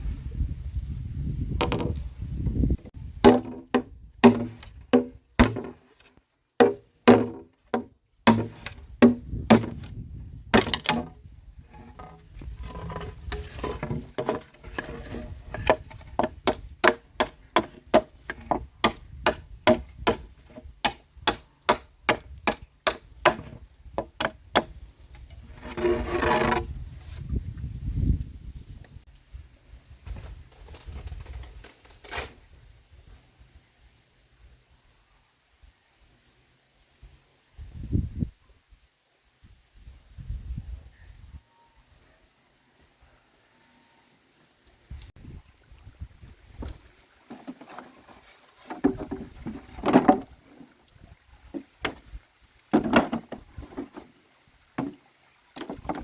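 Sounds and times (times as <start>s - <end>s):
strikes on bamboo: 3.2s - 24.8s.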